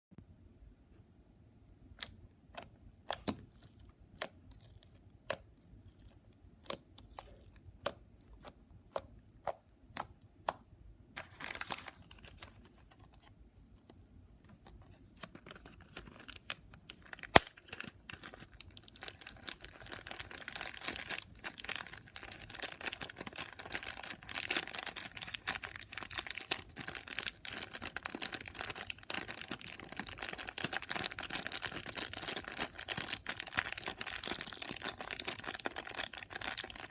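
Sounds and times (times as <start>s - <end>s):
slime clicking: 4.1s - 5.5s
slime crackling and popping: 16.3s - 36.9s.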